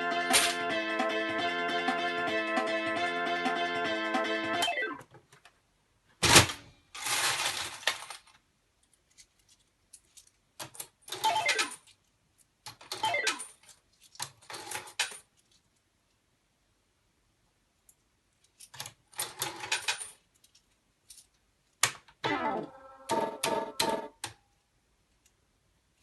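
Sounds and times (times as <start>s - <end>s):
falling electronic tones: 0.0s - 5.0s, 22.2s - 24.1s
slot machine electronic jingle: 0.0s - 5.0s, 13.0s - 13.4s, 22.2s - 24.1s.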